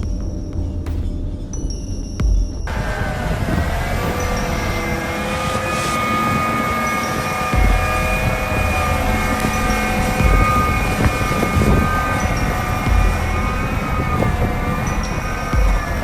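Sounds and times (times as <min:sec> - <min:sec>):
heavy diesel machinery whining: 0:02.7 - 0:16.0
deep thuds: 0:07.5 - 0:16.0.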